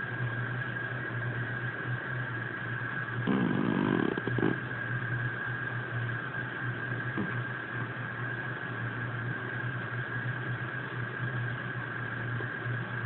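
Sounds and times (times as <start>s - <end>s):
steady low hum: 0.0s - 13.0s
cat snoring: 3.2s - 4.7s, 7.1s - 7.4s.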